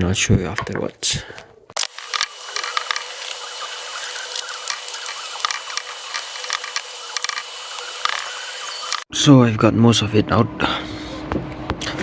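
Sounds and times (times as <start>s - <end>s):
hot-air blower hissing: 1.8s - 9.1s.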